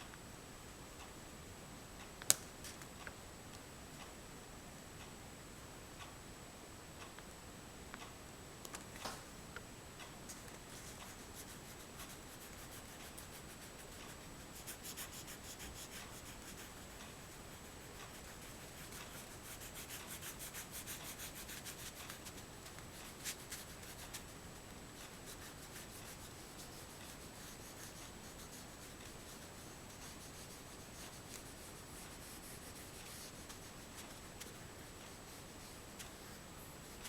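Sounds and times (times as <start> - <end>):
oil pastel rubbing on paper: 10.7 - 24.3, 25.0 - 37.0.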